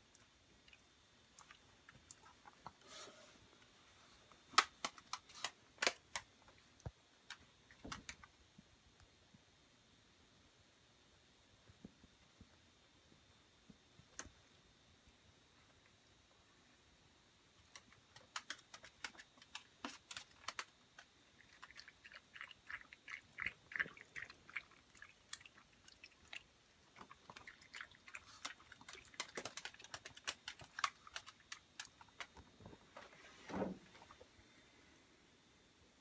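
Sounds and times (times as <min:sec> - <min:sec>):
dog chewing dry food: 0:17.9 - 0:32.4.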